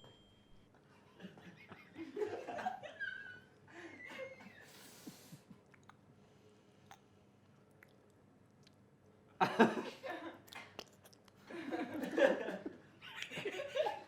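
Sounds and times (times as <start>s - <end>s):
person making mouth and throat sounds: 10.5s - 11.5s.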